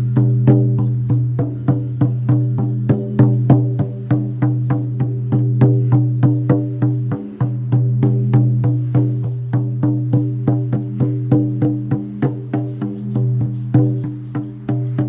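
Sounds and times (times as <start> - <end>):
hand drum beaten rhythmically: 0.0 - 15.0.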